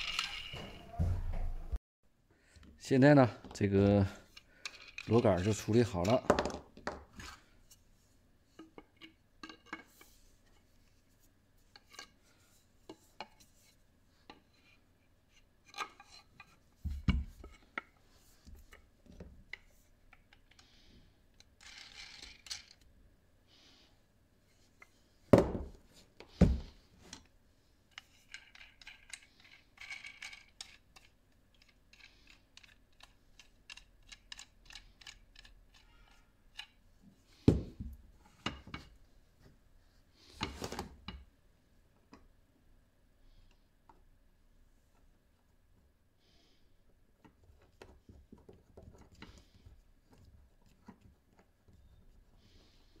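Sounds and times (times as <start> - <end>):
metal parts clicking and tapping: 27.9 - 36.8.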